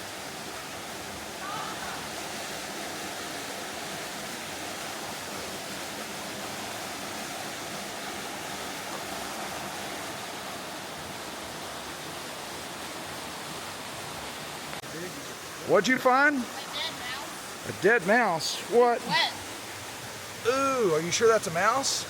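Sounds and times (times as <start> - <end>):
waterfall pouring into pool: 16.3 - 22.0.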